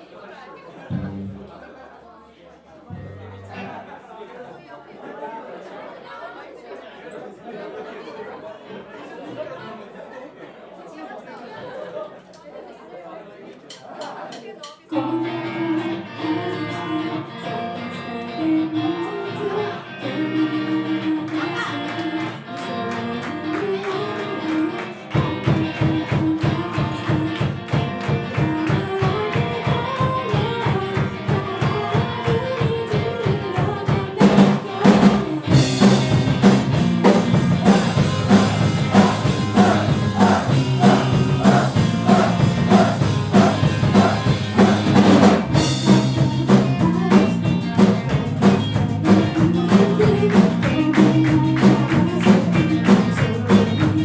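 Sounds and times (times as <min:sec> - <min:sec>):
live rock band playing: 0:00.9 - 0:01.5, 0:14.9 - 0:54.0
driving drum beat: 0:25.2 - 0:54.0.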